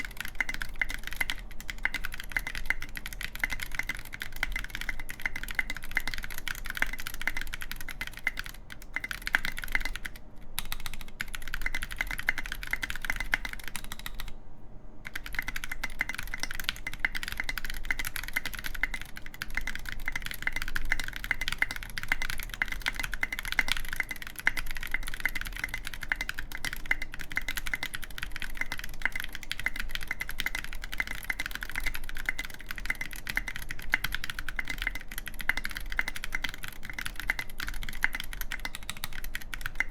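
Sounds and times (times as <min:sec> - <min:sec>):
mechanical keyboard typing: 0:00.0 - 0:14.4, 0:15.1 - 0:39.9.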